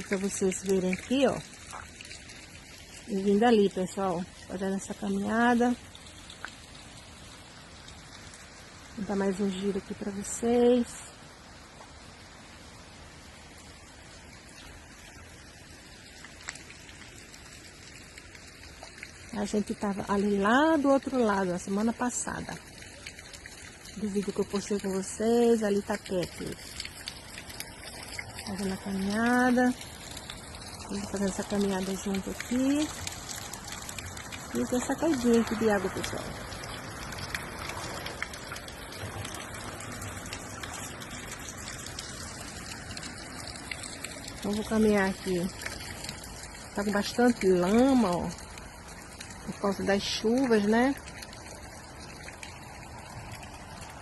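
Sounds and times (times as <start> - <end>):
small waterfall splashing: 0.0 - 54.0.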